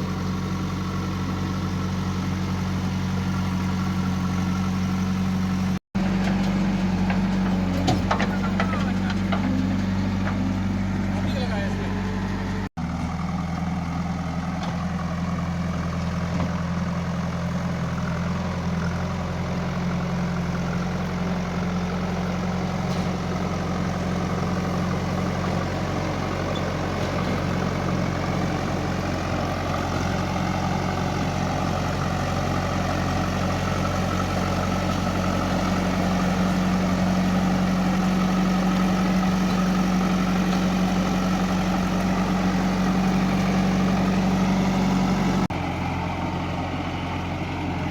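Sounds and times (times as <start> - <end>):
diesel engine running steadily: 0.0 - 47.9.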